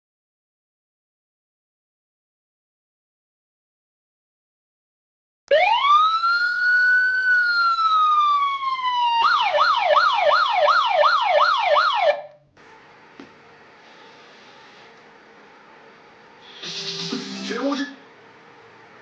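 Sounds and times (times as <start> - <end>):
electronic siren alarm: 5.5 - 12.4.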